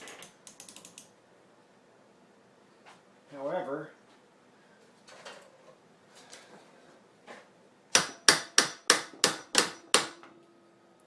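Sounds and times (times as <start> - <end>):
hammer rapping on steel: 8.0 - 10.2.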